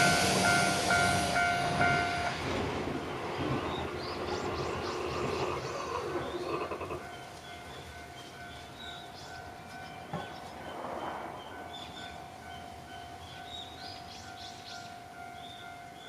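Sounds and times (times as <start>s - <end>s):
level crossing alarm ringing: 0.0s - 2.5s.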